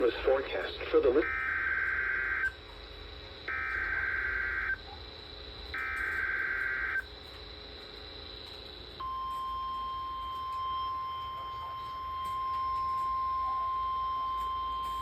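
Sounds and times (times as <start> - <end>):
buzzy digital data tones: 0.0 - 2.6, 3.4 - 4.9, 5.7 - 7.1, 9.0 - 15.0
single-pitch warning alarm tone: 1.2 - 2.6, 3.5 - 4.8, 5.7 - 7.1, 9.0 - 15.0.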